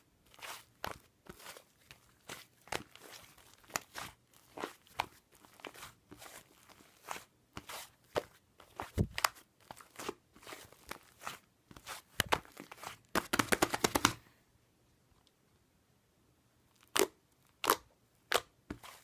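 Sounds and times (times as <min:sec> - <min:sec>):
clay slime squished by hand: 0:00.2 - 0:14.2, 0:16.7 - 0:19.0.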